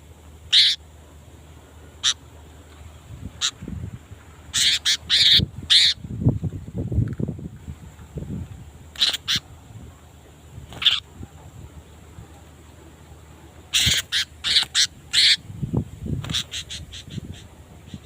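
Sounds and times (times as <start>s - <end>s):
bird giving harsh calls: 0.5s - 0.8s, 2.0s - 2.2s, 3.4s - 3.6s, 4.5s - 6.0s, 8.9s - 9.5s, 10.7s - 11.1s, 13.7s - 15.5s, 16.2s - 18.0s.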